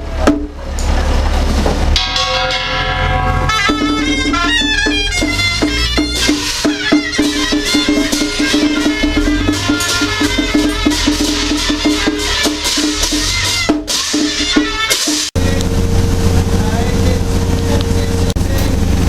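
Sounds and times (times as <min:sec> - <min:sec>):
drum strikes: 0:01.6 - 0:15.4, 0:18.3 - 0:19.0
ringing metallic tones: 0:02.0 - 0:11.8, 0:18.4 - 0:19.0
wood-block strikes: 0:02.0 - 0:15.1.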